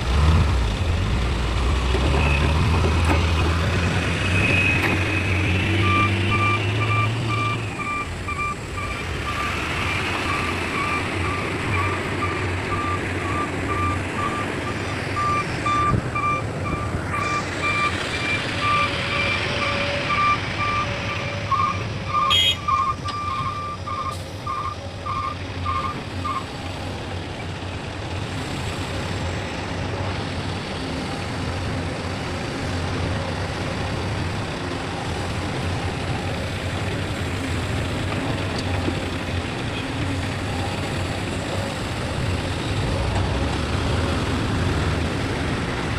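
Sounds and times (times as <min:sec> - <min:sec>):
diesel engine rumbling: 0:00.0 - 0:45.9
backup alarm beeping: 0:05.8 - 0:09.5, 0:15.2 - 0:26.4.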